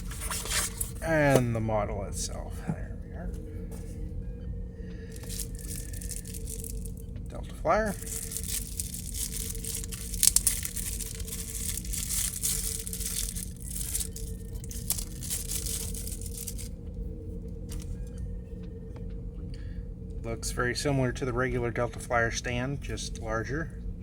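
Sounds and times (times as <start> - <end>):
plastic packaging crinkling and tearing: 0.0 - 1.4, 5.1 - 7.0, 7.9 - 16.7.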